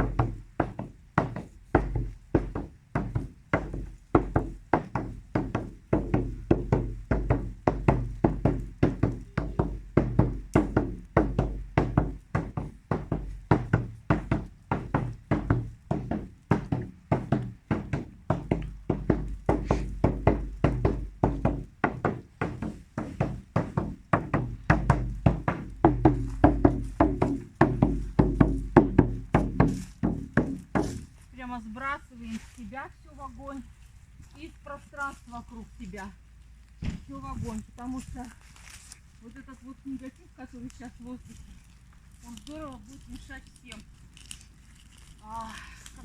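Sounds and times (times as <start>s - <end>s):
hand drum booming: 0.0s - 31.2s.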